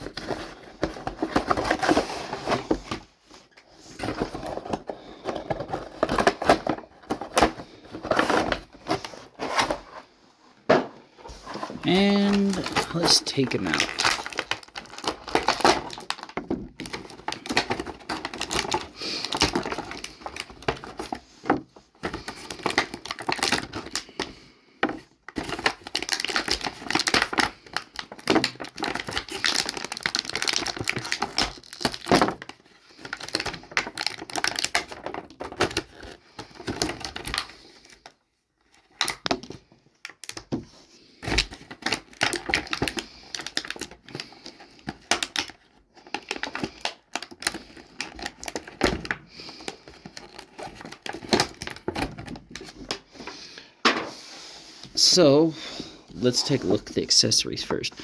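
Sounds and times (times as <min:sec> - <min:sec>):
plastic packaging crackling: 0:11.2 - 0:21.2, 0:22.0 - 0:24.3, 0:25.3 - 0:40.5, 0:41.2 - 0:53.3.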